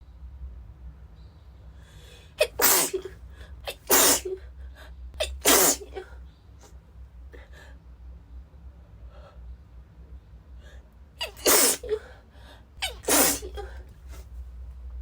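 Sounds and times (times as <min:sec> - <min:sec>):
quiet breathing: 0:01.6 - 0:02.4, 0:03.2 - 0:03.7, 0:04.4 - 0:05.2, 0:07.3 - 0:08.0, 0:08.7 - 0:11.0, 0:11.9 - 0:12.8
woman sneezing: 0:02.4 - 0:04.4, 0:05.2 - 0:06.1, 0:11.2 - 0:12.1, 0:12.8 - 0:14.2.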